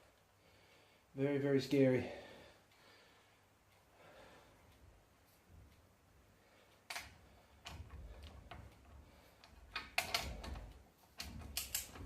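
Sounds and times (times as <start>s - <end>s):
wrench clicking on metal: 6.9s - 12.0s.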